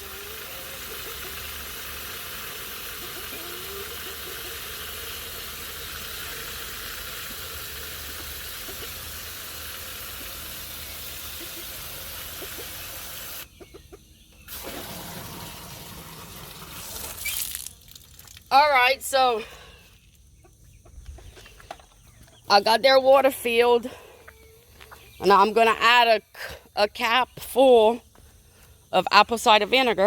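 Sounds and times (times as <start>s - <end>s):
water running from a tap: 0.0s - 13.4s, 14.5s - 18.4s.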